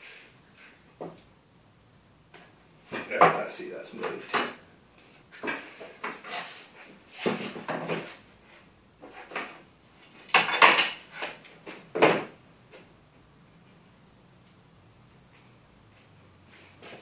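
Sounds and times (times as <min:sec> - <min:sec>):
wooden batten knocking and scraping: 0:02.4 - 0:04.6, 0:07.2 - 0:08.2.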